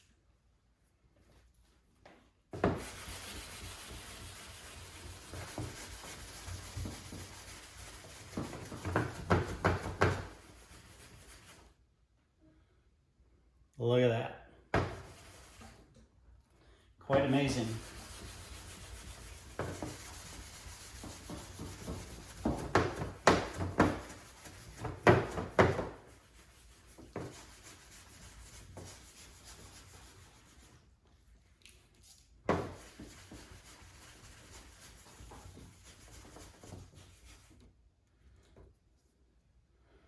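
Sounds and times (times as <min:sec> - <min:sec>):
clay bar rubbing on car paint: 0:02.6 - 0:11.8, 0:14.8 - 0:15.8, 0:17.2 - 0:30.9, 0:32.5 - 0:37.6.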